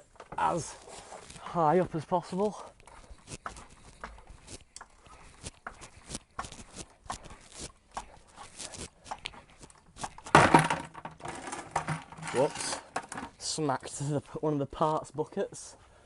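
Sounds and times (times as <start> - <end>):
bucket of metal parts clattering: 10.1 - 13.5.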